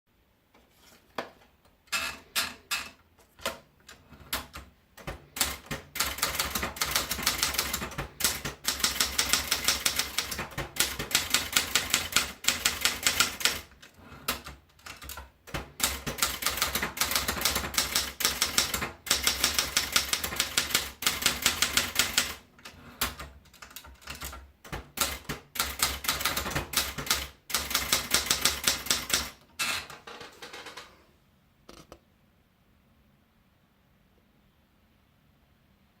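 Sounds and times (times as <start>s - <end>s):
typewriter keystrokes: 1.9s - 29.4s.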